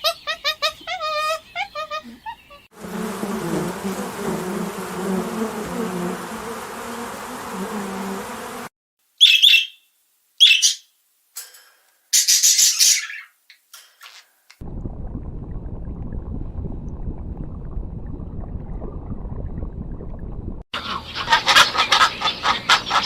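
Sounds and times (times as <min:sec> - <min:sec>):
high-pitched bird calls: 0:00.0 - 0:02.7, 0:09.2 - 0:09.8, 0:10.4 - 0:10.9, 0:12.2 - 0:13.4
flying insect buzzing: 0:02.7 - 0:08.7
loud bird chirps: 0:09.2 - 0:10.9, 0:12.2 - 0:13.4.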